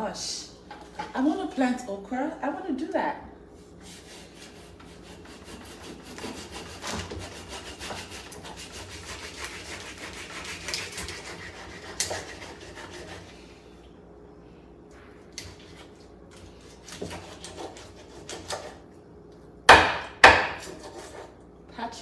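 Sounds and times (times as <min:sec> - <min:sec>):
knife scraping fish scales: 0:03.8 - 0:13.4, 0:15.4 - 0:18.8, 0:20.6 - 0:21.4.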